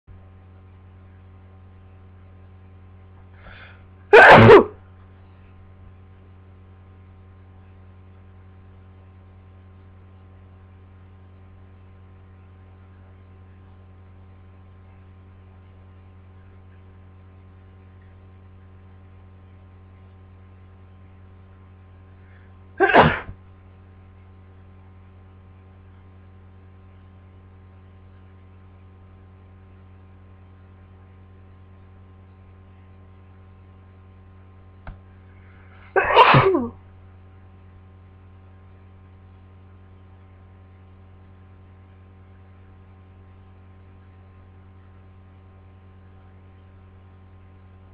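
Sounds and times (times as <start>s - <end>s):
steady low hum: 0.1s - 47.9s
person sneezing: 3.4s - 4.8s, 22.8s - 23.4s, 35.8s - 36.8s.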